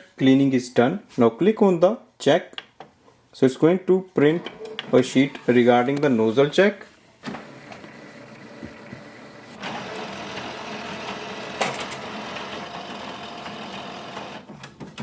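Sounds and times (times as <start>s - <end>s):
inkjet printer running: 7.4s - 15.0s
printer sharp click: 9.6s - 15.0s.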